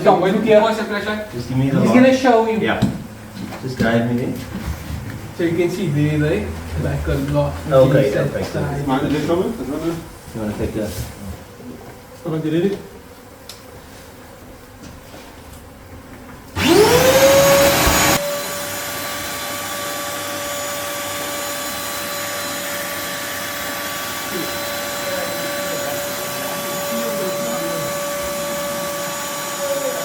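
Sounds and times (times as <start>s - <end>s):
vacuum motor whine: 16.5s - 30.0s.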